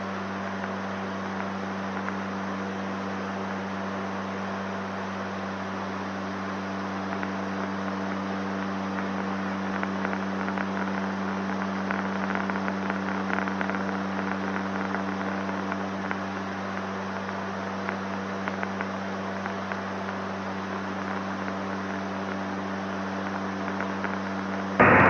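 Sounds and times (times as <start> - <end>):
turboprop engines droning: 24.8 - 25.0.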